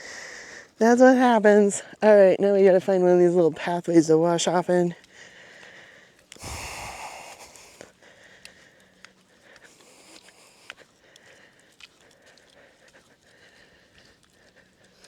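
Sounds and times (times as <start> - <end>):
soft breathing: 5.0 - 15.0
heavy breath out: 5.1 - 15.0
faint clicks: 7.4 - 15.0.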